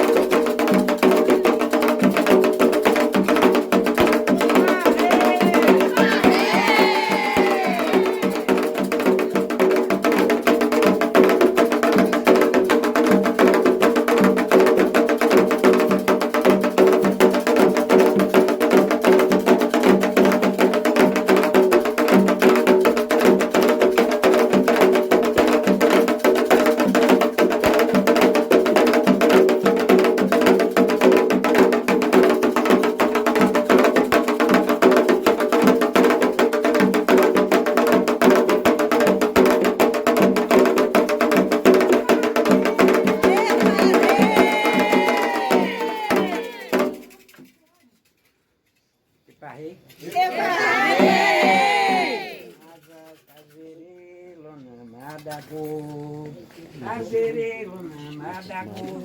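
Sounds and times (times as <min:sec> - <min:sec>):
hand drums fast rhythm: 0:00.0 - 0:47.2.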